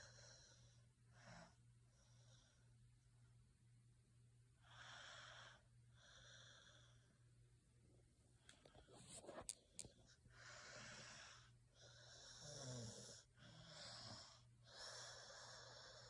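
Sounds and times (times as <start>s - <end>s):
person snoring faintly: 10.4s - 16.0s.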